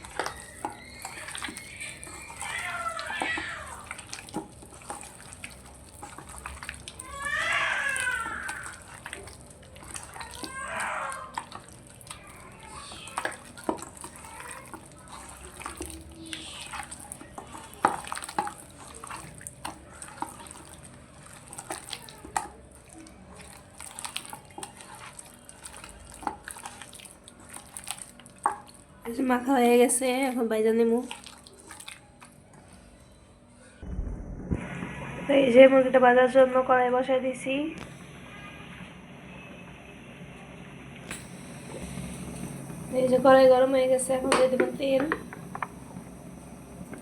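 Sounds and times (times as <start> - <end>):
wet squelches of meat mixed by hand: 0.0 - 29.1, 30.9 - 32.8.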